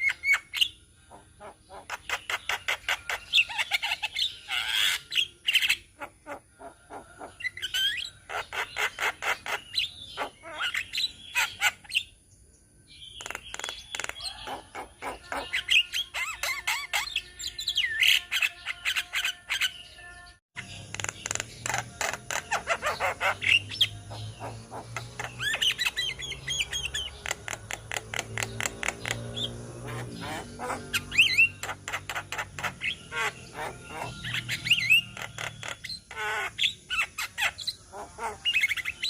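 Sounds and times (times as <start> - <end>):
bird squawks: 0.0 - 12.1, 13.2 - 17.3, 21.0 - 39.0
mynas chattering: 20.6 - 39.0.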